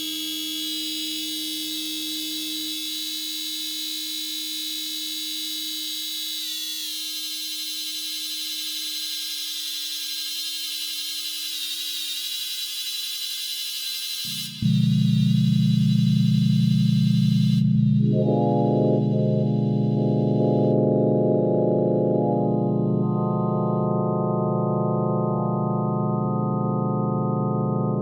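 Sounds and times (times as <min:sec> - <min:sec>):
buzzy synthesizer drone: 0:14.6 - 0:28.0.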